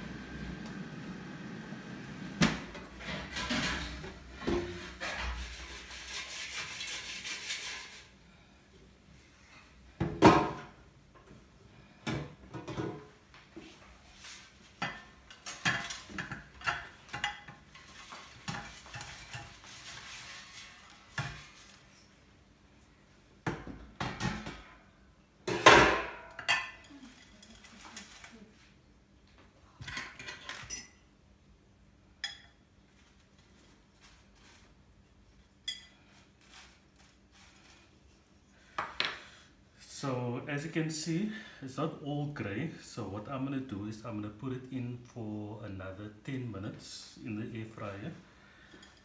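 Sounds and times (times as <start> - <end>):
dishes and utensils clattering: 2.8 - 8.0, 14.7 - 21.8, 25.5 - 28.3, 29.8 - 31.1, 32.1 - 32.7, 48.6 - 49.0.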